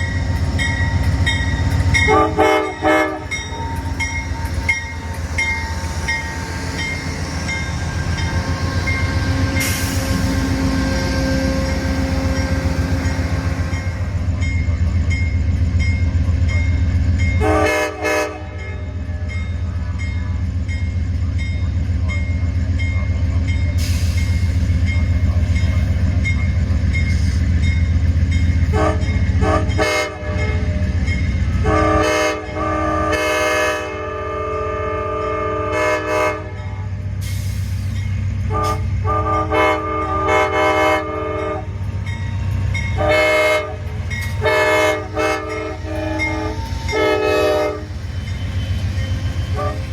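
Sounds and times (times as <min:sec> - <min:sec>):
locomotive horn blasts: 0:02.0 - 0:03.4, 0:17.4 - 0:19.3, 0:28.7 - 0:30.8, 0:31.6 - 0:36.6, 0:38.5 - 0:41.7, 0:43.0 - 0:48.0, 0:49.4 - 0:49.9.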